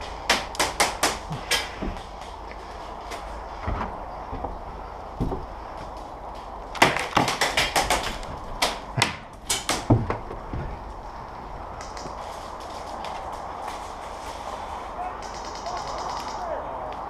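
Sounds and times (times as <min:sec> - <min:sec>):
airsoft guns firing: 0:00.3 - 0:01.7, 0:06.8 - 0:09.9, 0:15.2 - 0:16.6.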